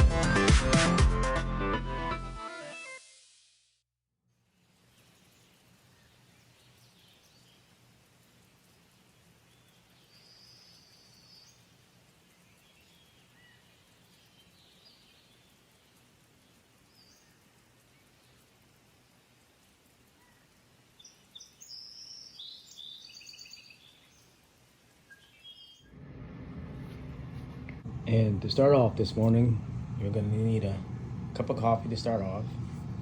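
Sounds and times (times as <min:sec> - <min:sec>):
bird chirps: 0:04.8 - 0:25.9
low steady hum: 0:25.8 - 0:33.0.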